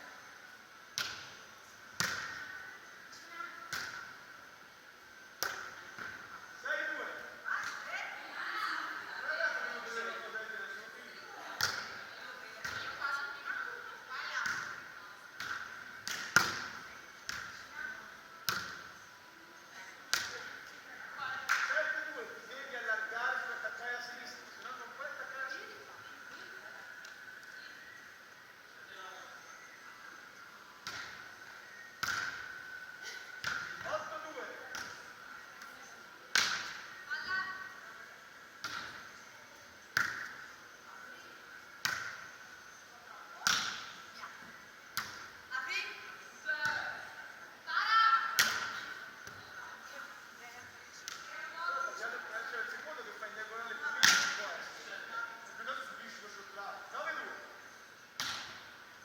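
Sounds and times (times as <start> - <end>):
volleyball slaps with echo: 1.0 - 1.4, 2.0 - 2.5, 3.7 - 4.1, 5.4 - 6.2, 11.6 - 12.0, 12.6 - 13.1, 14.4 - 14.8, 15.4 - 17.7, 18.5 - 18.9, 20.1 - 21.8, 30.8 - 31.2, 32.0 - 32.6, 33.3 - 35.0, 36.3 - 36.9, 38.6 - 39.1, 39.9 - 40.4, 41.8 - 42.3, 43.4 - 44.0, 45.0 - 45.3, 48.3 - 49.4, 54.0 - 54.5, 58.2 - 58.7
hands slapping volleyball: 5.4 - 5.7, 15.4 - 17.5, 20.1 - 20.4, 21.4 - 21.8, 32.0 - 32.4, 36.3 - 36.8, 40.0 - 40.4, 41.8 - 42.2, 43.4 - 43.9, 48.4 - 48.9, 54.0 - 54.4, 58.2 - 58.6.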